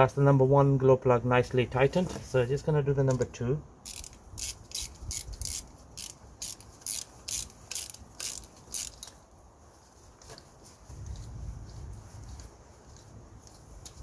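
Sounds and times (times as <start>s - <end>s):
ratchet wrench clicking: 3.8s - 9.2s.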